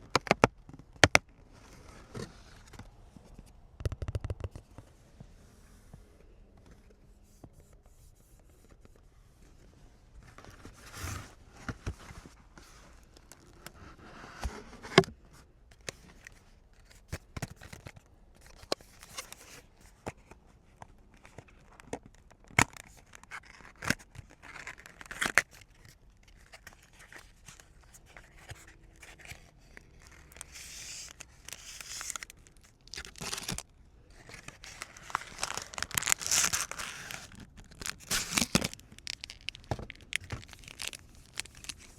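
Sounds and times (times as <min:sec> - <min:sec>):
wrappers tearing and crinkling: 0:29.0 - 0:41.9.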